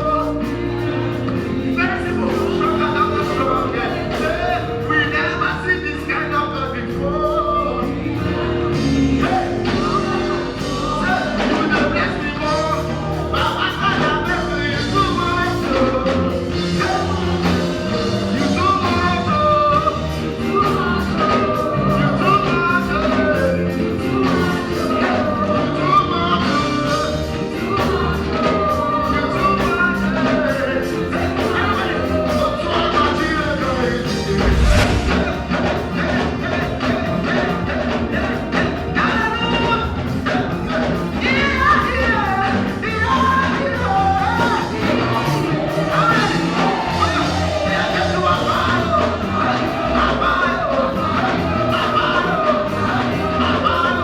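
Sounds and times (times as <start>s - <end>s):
band playing steady beat: 0.0s - 25.6s, 33.8s - 38.9s
voices singing: 0.0s - 54.0s.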